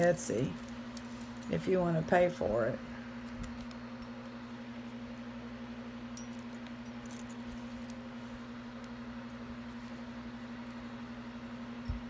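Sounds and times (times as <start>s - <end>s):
steady low hum: 0.0s - 12.0s
metallic clinks of jewelry: 6.2s - 8.0s.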